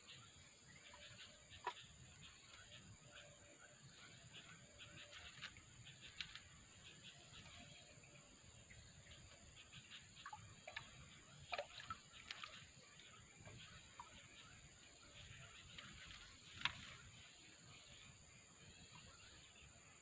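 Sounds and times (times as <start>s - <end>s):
small chirps and clicks: 1.0s - 1.9s, 5.0s - 6.6s, 10.2s - 14.4s, 15.6s - 17.1s.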